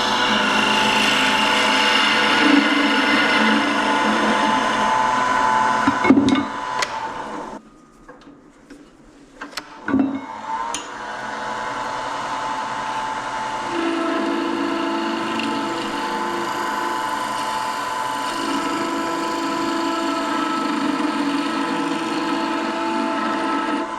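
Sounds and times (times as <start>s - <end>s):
turning tool scraping wood: 0.0s - 6.0s, 13.6s - 23.9s
wood lathe humming: 0.0s - 7.6s, 10.3s - 23.9s.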